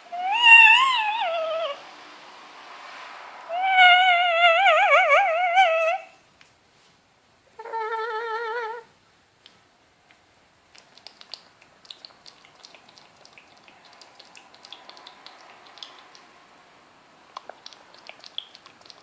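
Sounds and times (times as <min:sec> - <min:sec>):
soft high clicks and ticks: 0:09.4 - 0:16.3, 0:17.3 - 0:19.0.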